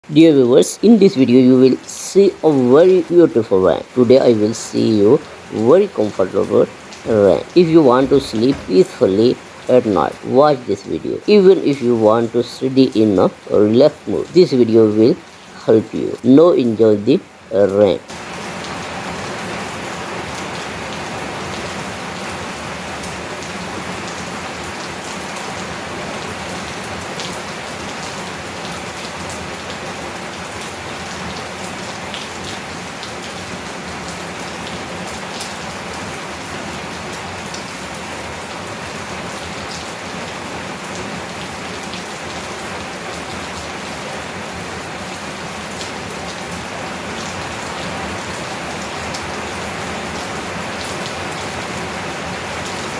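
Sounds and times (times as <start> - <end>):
heavy rain: 0.0 - 52.9
raindrops ticking: 0.2 - 18.3.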